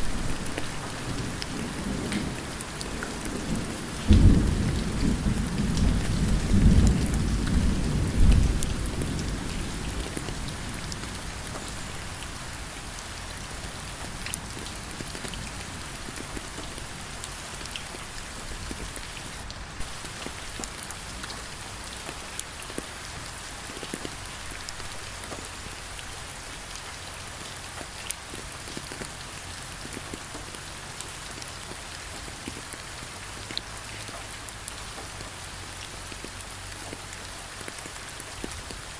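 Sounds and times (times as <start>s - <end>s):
thunder rumbling: 0.0s - 12.2s
steady rain: 0.0s - 38.9s.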